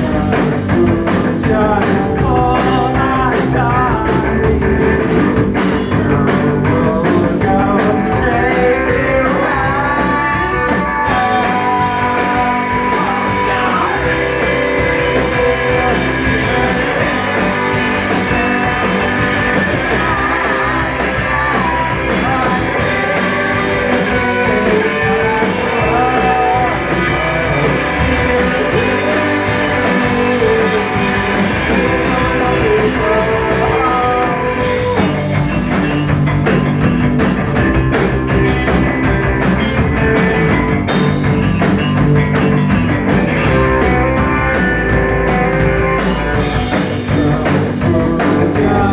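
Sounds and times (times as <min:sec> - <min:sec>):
person singing: 0:00.0 - 0:35.5, 0:46.1 - 0:48.9
electric guitar: 0:00.0 - 0:48.9
rock band playing live: 0:00.0 - 0:48.9.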